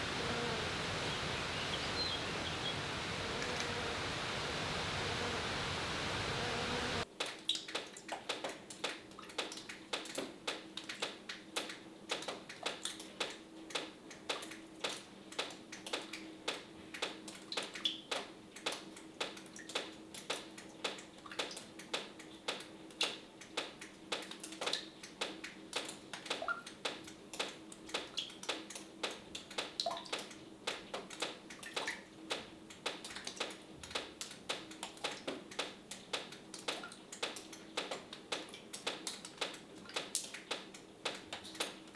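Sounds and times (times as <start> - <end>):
faint steady hum: 0.0 - 7.0
water dripping: 0.0 - 41.9.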